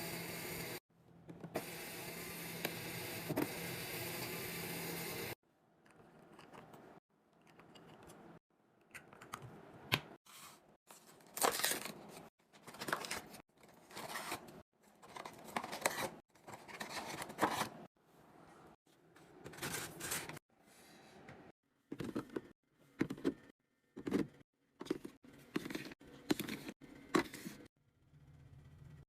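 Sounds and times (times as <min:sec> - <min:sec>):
plastic packaging crinkling and tearing: 0:11.0 - 0:14.4.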